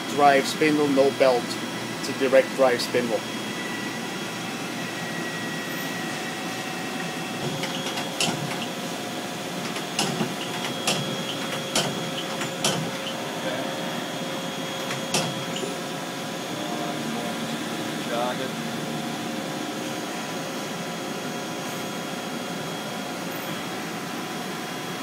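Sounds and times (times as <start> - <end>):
lathe machine hum: 0.0 - 25.0
sharp clicks or knocks: 9.6 - 13.0.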